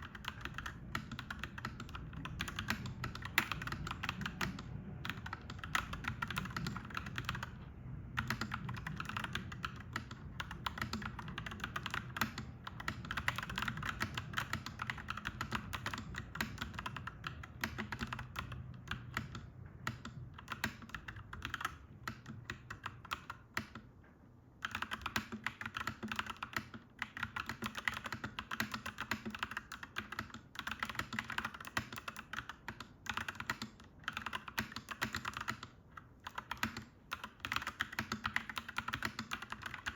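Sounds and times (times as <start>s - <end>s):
typing on mechanical keyboard: 0.0s - 24.0s, 24.6s - 39.9s
steady low hum: 0.0s - 25.0s.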